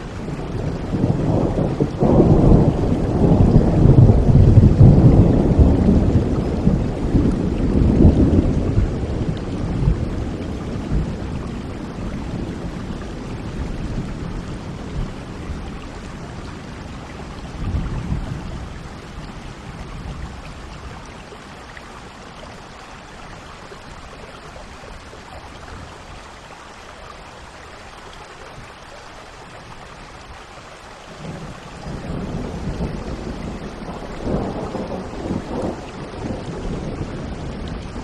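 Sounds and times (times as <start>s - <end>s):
thunder rumbling: 0.0s - 21.1s, 31.1s - 38.0s
rain falling: 0.0s - 38.0s.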